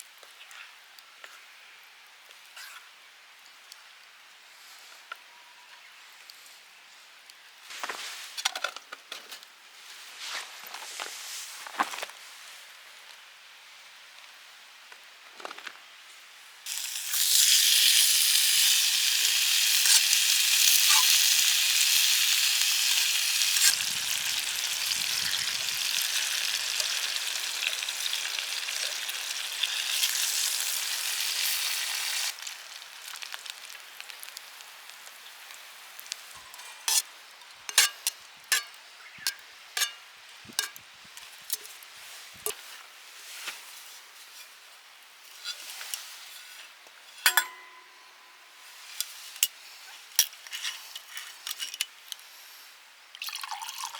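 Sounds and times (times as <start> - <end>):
food sizzling in a pan: 16.6 - 44.5.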